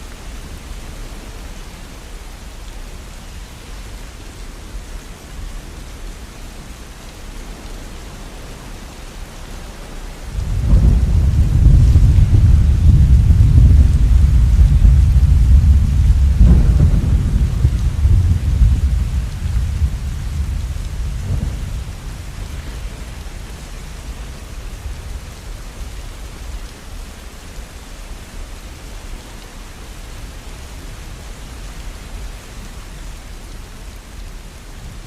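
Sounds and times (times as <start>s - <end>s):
steady rainfall: 0.0s - 35.0s
rolling thunder: 10.3s - 25.2s
thunder crack: 10.4s - 22.5s.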